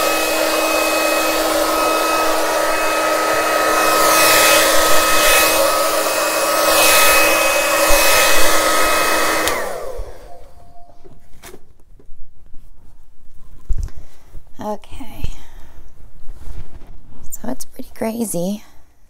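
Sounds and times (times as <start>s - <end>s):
hair dryer whine and rushing air: 0.0s - 11.6s.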